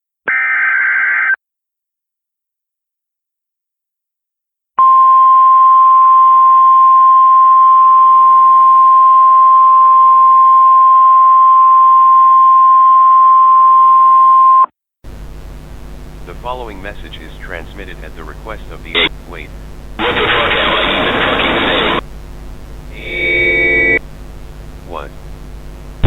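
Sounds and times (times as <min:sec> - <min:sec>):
loud steady alert tone: 0:23.0 - 0:24.0.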